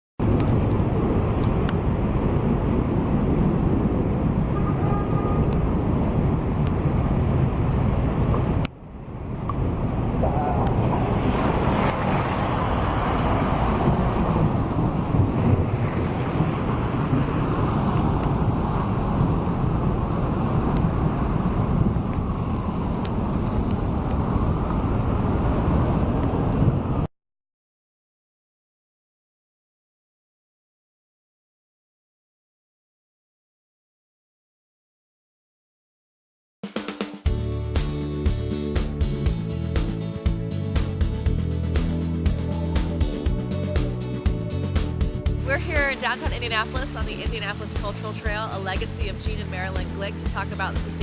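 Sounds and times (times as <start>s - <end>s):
low street rumble: 0.2s - 27.1s, 37.4s - 51.0s.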